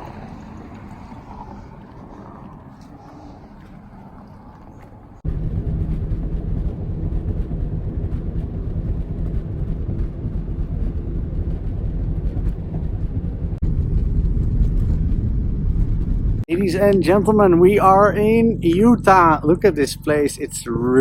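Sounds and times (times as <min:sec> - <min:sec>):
tyre and wind noise: 0:00.0 - 0:16.6
car engine cruising: 0:00.0 - 0:21.0.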